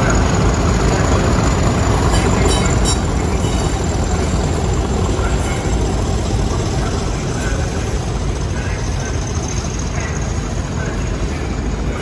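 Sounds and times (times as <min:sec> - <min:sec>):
train engine rumbling: 0:00.0 - 0:12.0.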